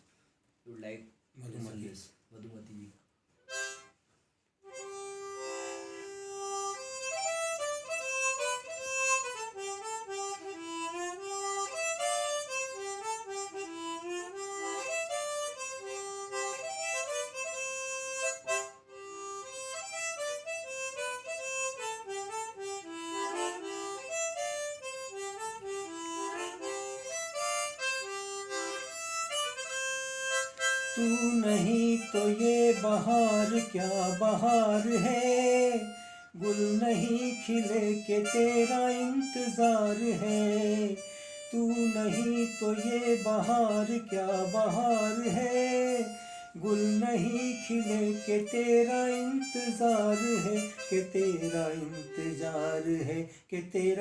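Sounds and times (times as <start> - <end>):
reedy wind instrument melody: 4.7 - 52.7.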